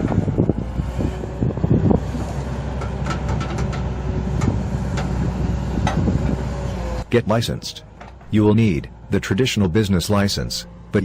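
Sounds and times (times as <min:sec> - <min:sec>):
heavy machine engine running: 0:00.0 - 0:11.0
knocks and clanks: 0:02.7 - 0:05.2, 0:05.8 - 0:06.3, 0:07.9 - 0:08.4.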